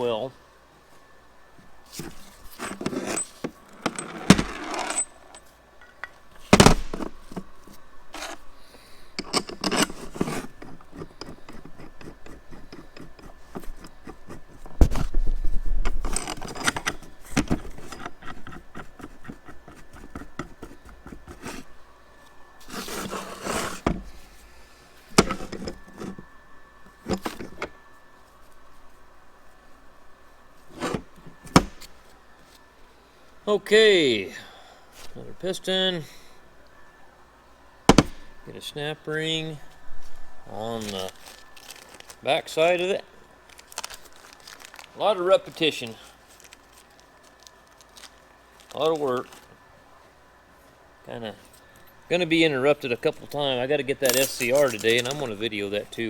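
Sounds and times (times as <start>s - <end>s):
metal parts and tools clinking: 2.0s - 8.4s, 9.2s - 15.1s, 15.8s - 18.9s, 25.1s - 26.3s, 26.9s - 27.8s, 53.2s - 55.4s.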